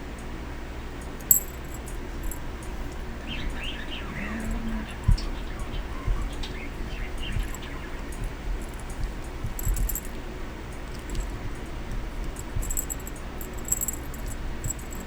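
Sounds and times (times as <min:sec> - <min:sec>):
metal parts clinking: 0:01.2 - 0:02.4, 0:08.6 - 0:10.2, 0:10.9 - 0:11.4, 0:12.2 - 0:15.0.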